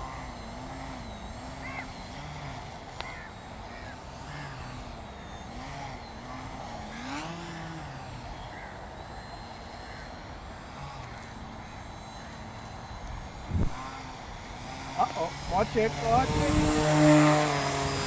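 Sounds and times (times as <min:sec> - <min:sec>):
electric motor and propeller: 0:00.0 - 0:18.0
wind buffeting microphone: 0:13.1 - 0:14.6, 0:15.3 - 0:18.0.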